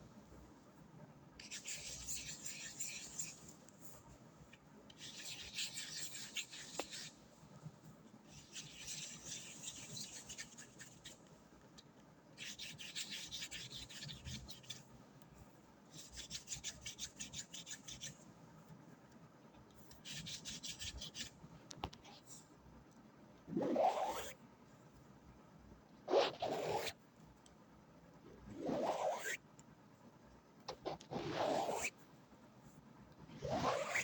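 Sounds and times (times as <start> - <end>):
scratchy rubbing rasp: 1.5 - 3.4, 5.0 - 7.2, 8.3 - 11.2, 12.4 - 14.8, 23.5 - 24.4, 26.1 - 27.0, 28.4 - 29.4, 30.7 - 32.0, 33.4 - 34.0.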